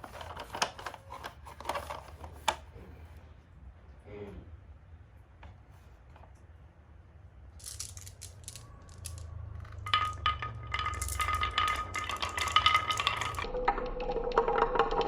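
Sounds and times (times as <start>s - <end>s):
marbles clattering down wooden run: 7.6s - 15.0s.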